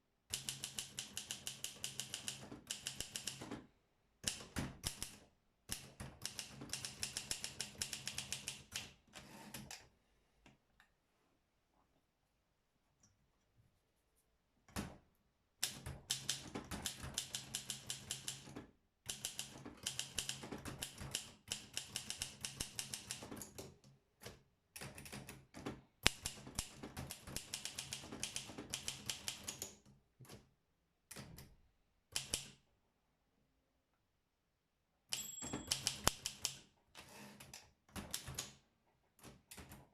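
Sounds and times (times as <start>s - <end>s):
typewriter typing: 0.3s - 3.6s, 4.2s - 9.0s, 15.6s - 30.4s, 32.1s - 32.6s, 35.1s - 36.7s.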